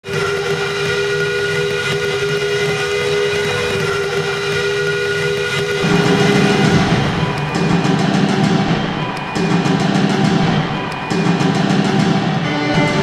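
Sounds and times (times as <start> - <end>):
goal horn blast: 0.0 - 9.9
arena goal song: 0.0 - 13.0.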